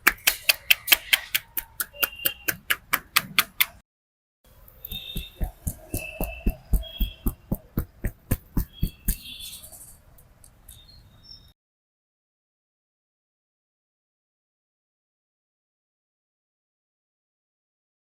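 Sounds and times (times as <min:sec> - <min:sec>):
thudding massage blows: 0:04.9 - 0:09.2.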